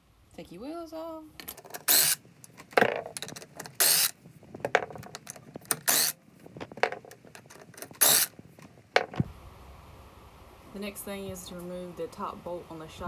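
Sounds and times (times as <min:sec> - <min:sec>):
impact wrench spinning: 0:01.4 - 0:09.2
metallic clinks of nuts and sockets: 0:01.4 - 0:09.2.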